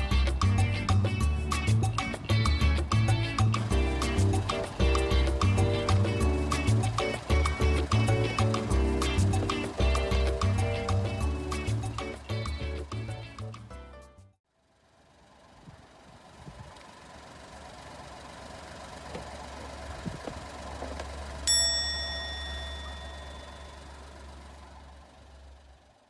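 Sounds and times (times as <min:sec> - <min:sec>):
car engine idling: 0:00.0 - 0:13.7, 0:14.6 - 0:26.0
bell-like ding: 0:21.5 - 0:24.2.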